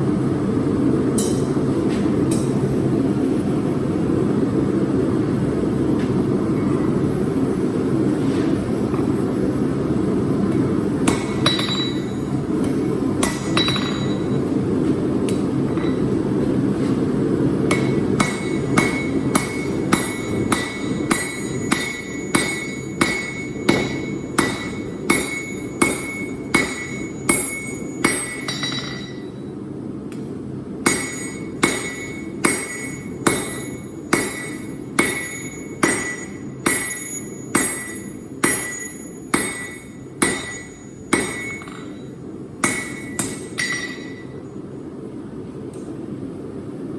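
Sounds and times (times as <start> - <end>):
hammer ringing on anvil: 1.2 - 1.6, 11.0 - 14.6, 15.3 - 16.2, 17.7 - 29.5, 30.8 - 44.5.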